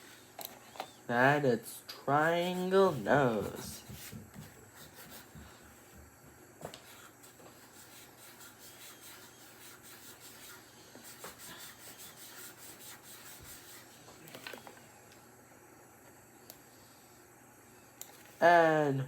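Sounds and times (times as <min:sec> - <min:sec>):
drawing tool scratching on paper: 0:02.3 - 0:05.5, 0:06.8 - 0:14.0.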